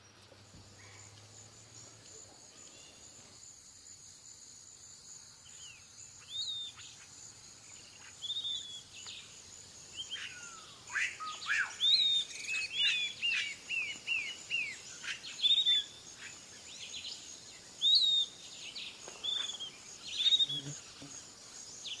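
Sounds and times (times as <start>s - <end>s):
birds chirping and whistling: 10.0s - 15.9s, 19.2s - 20.7s
high-pitched insect drone: 19.2s - 22.0s.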